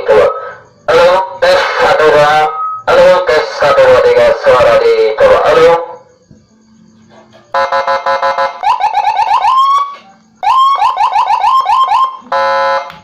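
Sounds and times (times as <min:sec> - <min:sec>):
siren rising chirps: 0:00.0 - 0:06.1, 0:07.5 - 0:13.0
electronic siren pulsing tone: 0:07.5 - 0:13.0.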